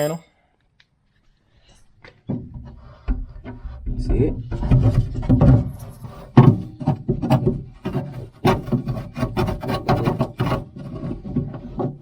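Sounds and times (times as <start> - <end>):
dirt scraping in steel door: 2.4 - 12.0.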